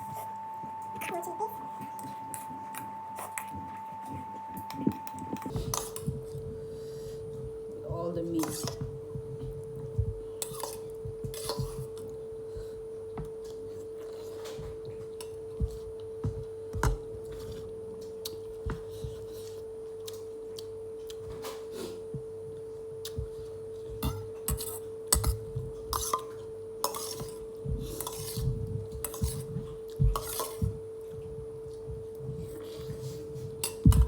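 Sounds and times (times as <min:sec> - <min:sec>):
steady hum: 0:00.0 - 0:34.0.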